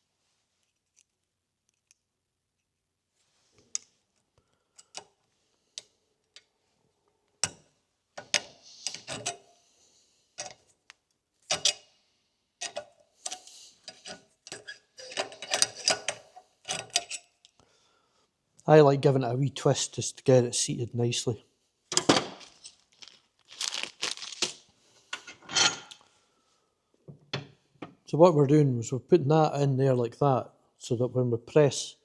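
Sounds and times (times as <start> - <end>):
small metal parts clinking: 8.2 - 9.4, 11.5 - 11.8, 12.6 - 17.5, 21.9 - 23.9.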